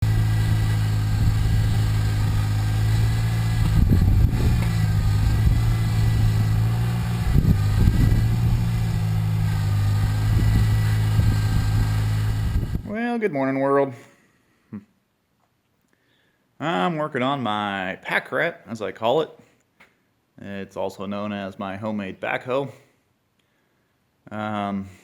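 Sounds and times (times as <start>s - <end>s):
small engine idling: 0.0s - 12.9s.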